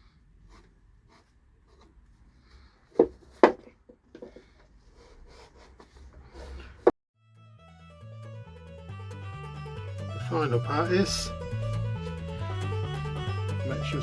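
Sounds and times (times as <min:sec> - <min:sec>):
wooden parts rubbing and clicking: 0:00.4 - 0:06.9
sharp wooden knocks: 0:02.9 - 0:04.5.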